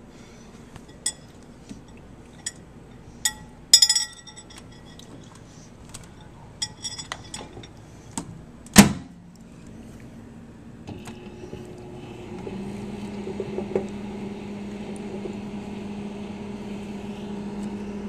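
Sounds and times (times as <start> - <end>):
dishware clinking: 3.3 - 5.1, 6.6 - 7.8.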